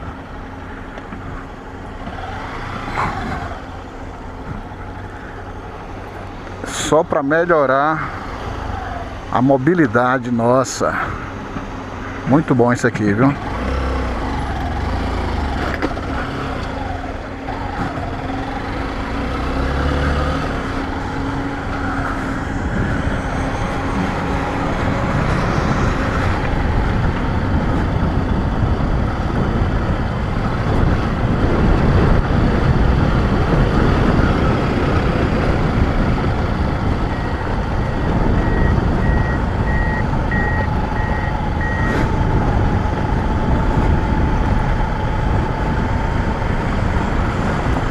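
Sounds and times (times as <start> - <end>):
motorcycle engine riding: 0.0 - 47.9
high beeps: 38.4 - 42.0.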